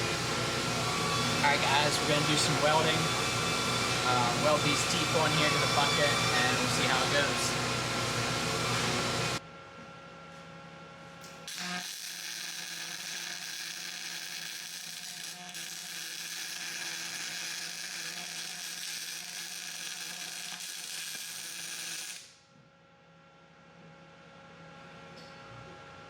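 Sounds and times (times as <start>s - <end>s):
welding arc crackling and hissing: 0.0s - 7.6s, 11.5s - 22.4s.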